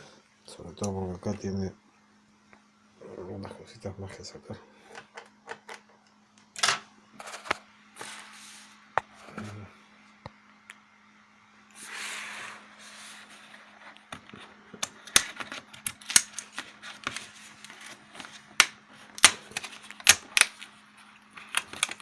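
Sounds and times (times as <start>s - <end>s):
packaging clicks and snaps: 14.2s - 20.7s, 21.3s - 22.0s
packaging rustling: 14.9s - 22.0s.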